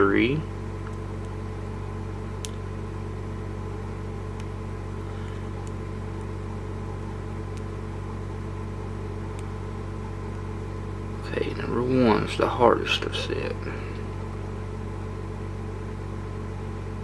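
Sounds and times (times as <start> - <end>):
steady electrical hum: 0.0 - 17.0.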